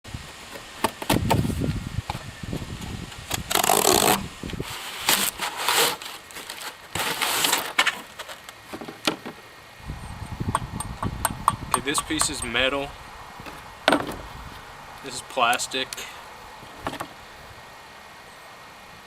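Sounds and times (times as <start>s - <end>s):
packaging rustling: 3.5s - 8.6s
sharp clicks and knocks: 10.5s - 12.6s.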